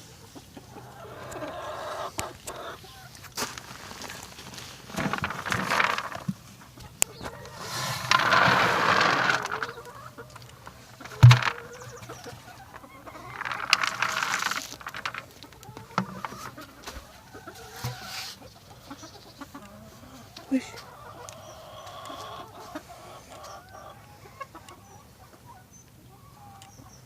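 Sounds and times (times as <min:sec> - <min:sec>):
chickens clucking: 0:00.0 - 0:27.0
rustling noise: 0:03.2 - 0:18.5.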